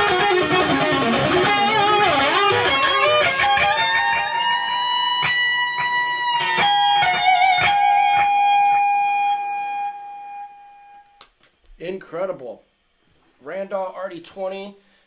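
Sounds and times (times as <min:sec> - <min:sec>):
distorted electric guitar lead: 0:00.0 - 0:11.0.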